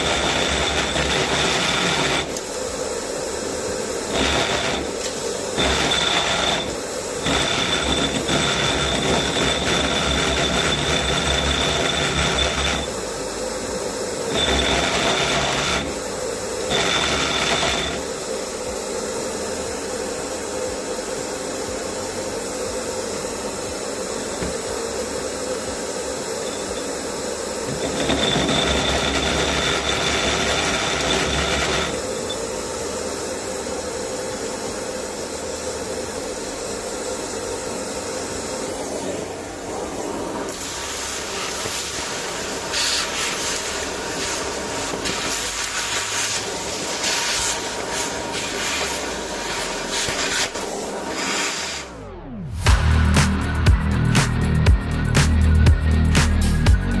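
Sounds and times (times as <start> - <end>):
rotary hammer drill hammering concrete: 0.0 - 2.6, 4.0 - 13.0, 14.3 - 18.2, 27.7 - 32.3
drill running steadily: 0.0 - 57.0.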